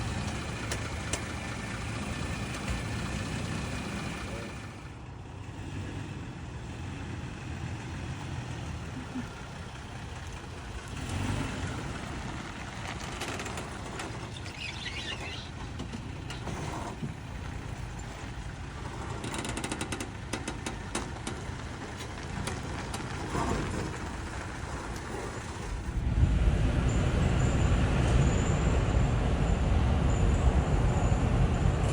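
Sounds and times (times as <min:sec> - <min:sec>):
pickup truck running: 0:00.0 - 0:31.9
creaks and pops: 0:10.2 - 0:26.0.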